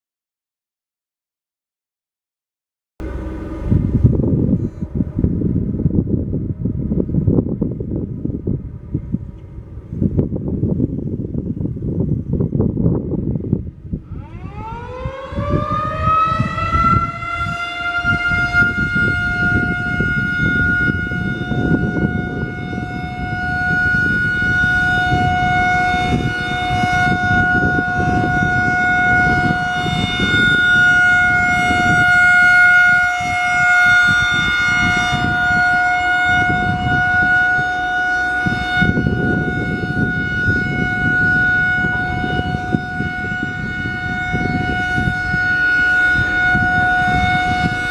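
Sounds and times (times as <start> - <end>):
low rushing noise: 3.0 - 17.2
outdoor warning siren: 3.0 - 47.9.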